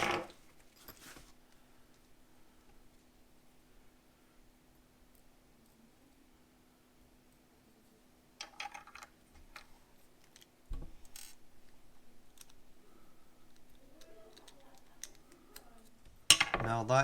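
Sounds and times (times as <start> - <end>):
small plastic parts clicking: 8.4 - 12.6, 13.4 - 16.4.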